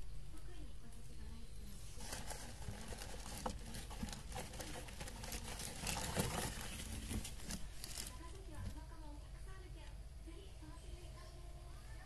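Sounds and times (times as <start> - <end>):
light rustling: 1.8 - 8.8.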